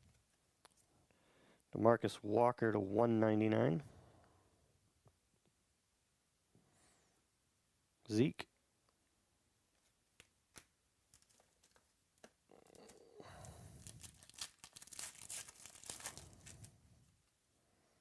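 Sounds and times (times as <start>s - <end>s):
foil wrapper tearing and crinkling: 10.5s - 16.7s.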